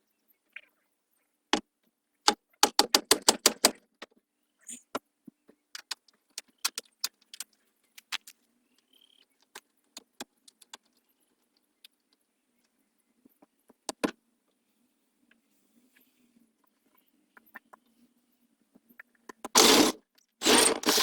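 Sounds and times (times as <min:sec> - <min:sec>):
hard objects clicking and clinking: 0:19.5 - 0:21.0.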